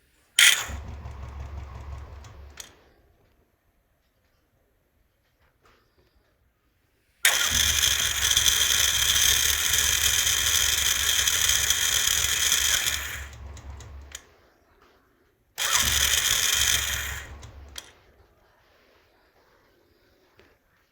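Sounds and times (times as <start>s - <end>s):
motorcycle electric starter cranking: 0.4s - 3.0s, 7.2s - 14.3s, 15.6s - 18.1s.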